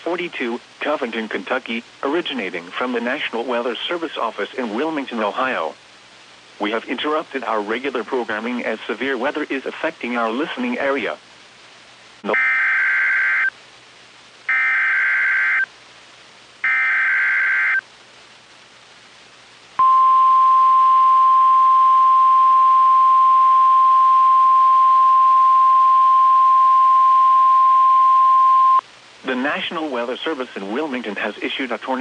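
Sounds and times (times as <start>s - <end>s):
buzzy digital data screech: 16.6s - 17.8s.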